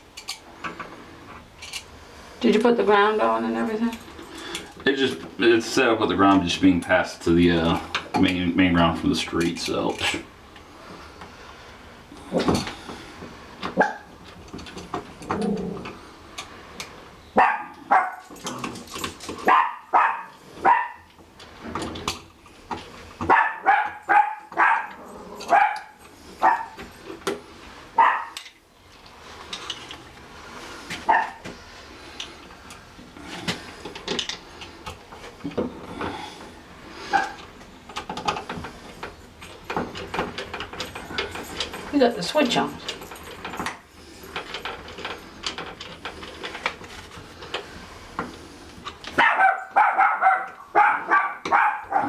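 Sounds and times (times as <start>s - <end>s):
small dog yapping: 13.8s - 14.1s, 17.4s - 18.2s, 19.4s - 21.1s, 23.3s - 26.8s, 28.0s - 28.4s, 31.1s - 31.4s, 49.2s - 52.0s.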